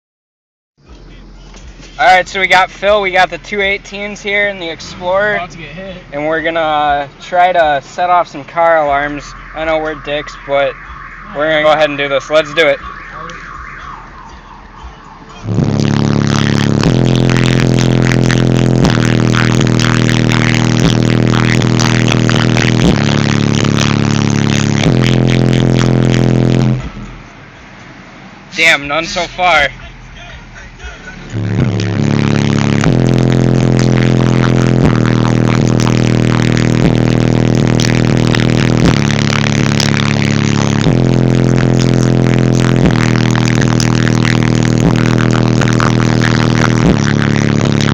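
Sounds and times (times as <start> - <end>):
loud deep bass from subwoofers: 0.8 - 27.5, 28.5 - 47.9
rattly buzz: 1.4 - 27.4, 28.4 - 47.9.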